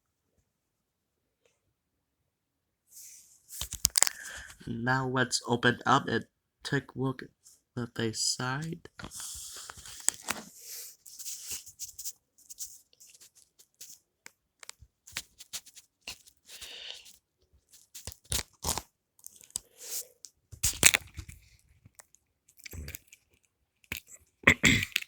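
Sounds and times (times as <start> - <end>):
plastic clicks and rustles: 3.6 - 4.2, 8.9 - 10.5
plastic packaging tearing: 3.6 - 4.2, 17.8 - 20.0, 20.6 - 21.4.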